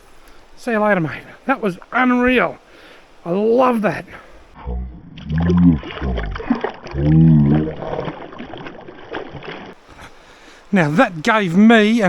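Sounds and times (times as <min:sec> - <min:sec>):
dull stream noise: 0:00.0 - 0:12.0
slowed-down man's voice groaning: 0:04.6 - 0:06.4.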